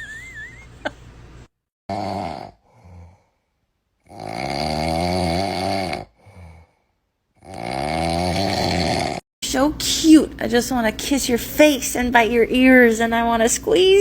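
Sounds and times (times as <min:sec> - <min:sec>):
cat snoring: 0:01.9 - 0:03.3, 0:04.0 - 0:06.8, 0:07.4 - 0:09.2.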